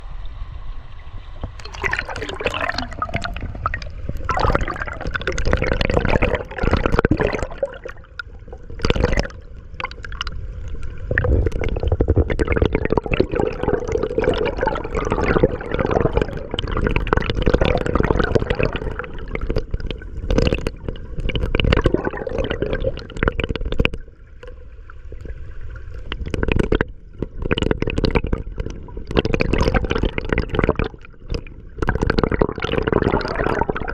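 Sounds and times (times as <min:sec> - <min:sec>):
water sloshing: 0:01.4 - 0:32.4
water gurgling and bubbling: 0:01.4 - 0:33.9.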